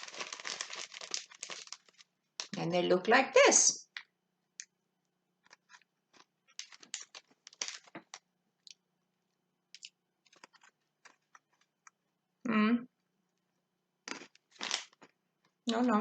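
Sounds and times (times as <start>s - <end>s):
biscuit crunching while chewed: 0.0s - 2.5s, 5.4s - 8.8s, 9.8s - 12.0s, 14.0s - 15.6s.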